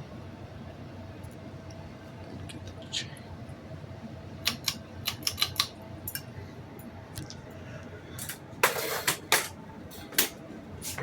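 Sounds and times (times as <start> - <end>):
ceiling fan humming: 0.0 - 11.0
sharp irregular clicks: 4.4 - 5.7.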